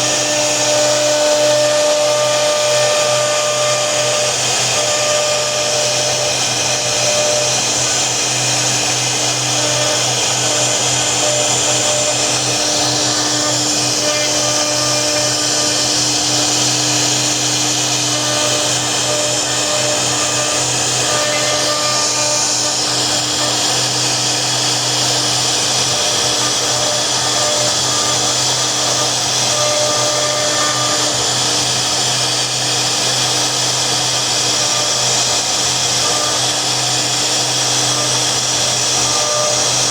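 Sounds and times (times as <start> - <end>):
router spindle whine and hiss: 0.0 - 39.9.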